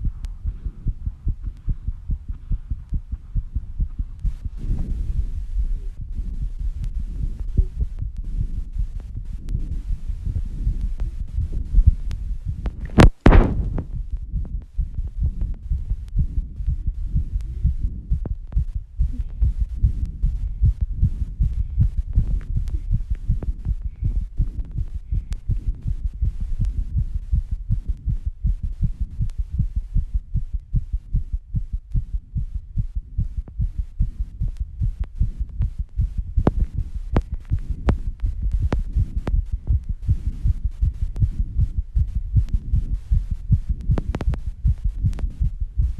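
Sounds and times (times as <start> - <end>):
fast heartbeat thumps: 0.0 - 45.9
loud knock: 13.0 - 13.9.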